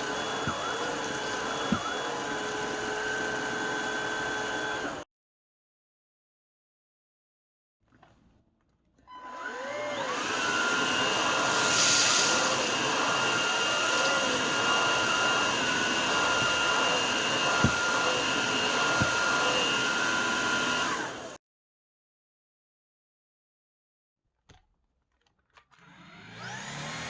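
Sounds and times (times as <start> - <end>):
stick vacuum whining: 0.0 - 5.0, 9.0 - 21.4, 25.6 - 27.0
hiss surge: 11.4 - 12.5.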